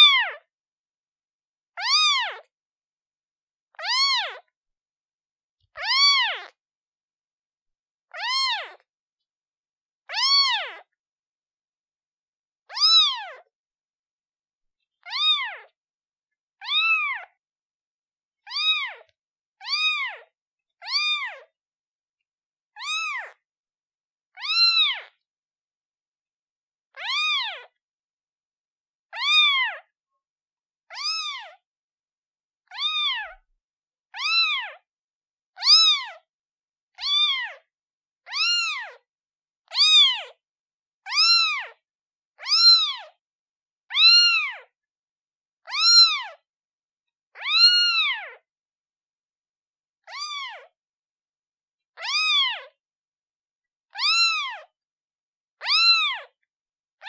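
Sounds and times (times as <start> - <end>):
kitten meowing: 0.0 - 0.4, 1.8 - 2.5, 3.8 - 4.5, 5.8 - 6.6, 8.2 - 8.8, 10.1 - 10.9, 12.7 - 13.5, 15.0 - 15.7, 16.6 - 17.3, 18.5 - 21.5, 22.8 - 23.4, 24.4 - 25.1, 27.0 - 27.8, 29.1 - 29.9, 30.9 - 31.6, 32.7 - 33.4, 34.2 - 34.8, 35.6 - 36.2, 37.0 - 37.6, 38.3 - 39.0, 39.7 - 40.4, 41.1 - 41.8, 42.4 - 43.2, 43.9 - 44.7, 45.6 - 46.4, 47.4 - 48.4, 50.0 - 50.7, 52.0 - 52.7, 53.9 - 54.7, 55.6 - 56.4.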